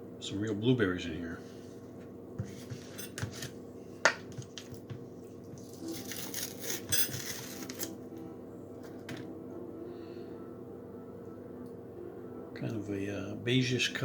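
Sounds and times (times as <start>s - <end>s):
container rustling and scraping: 2.4s - 3.6s, 5.6s - 8.0s.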